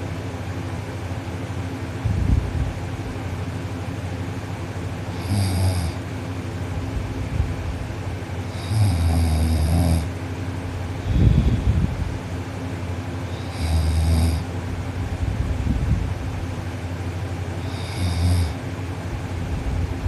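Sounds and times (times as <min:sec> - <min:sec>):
steady background hum: 0:00.0 - 0:20.0
boy snoring loudly: 0:05.1 - 0:06.0, 0:08.5 - 0:10.1, 0:13.3 - 0:14.5, 0:17.6 - 0:18.6.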